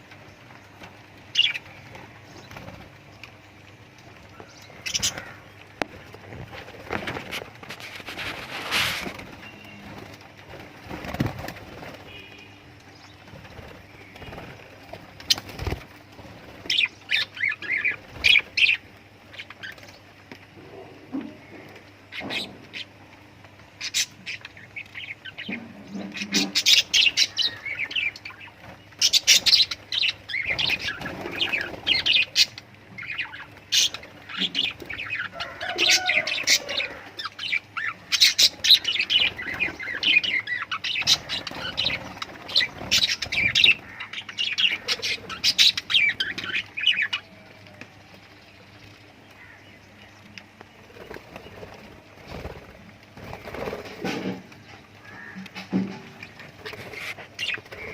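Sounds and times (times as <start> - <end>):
lovebirds chirping: 23.8 - 53.6.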